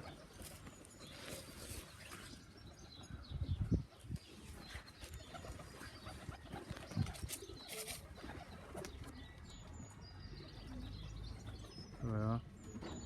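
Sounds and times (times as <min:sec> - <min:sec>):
pigeons cooing: 0:03.8 - 0:13.0.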